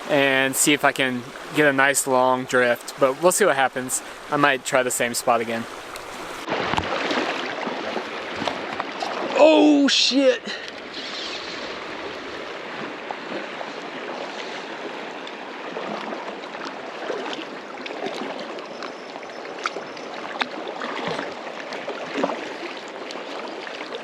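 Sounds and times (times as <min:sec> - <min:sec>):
river water rushing over rocks: 0:00.0 - 0:18.7.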